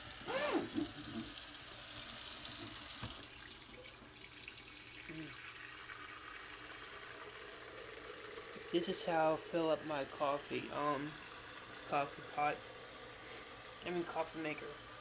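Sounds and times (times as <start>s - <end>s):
tap running water into container: 0.0s - 8.7s.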